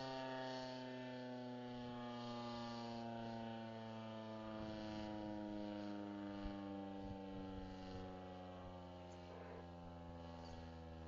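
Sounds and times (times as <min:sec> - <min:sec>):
warning siren winding down: 0:03.0 - 0:10.2.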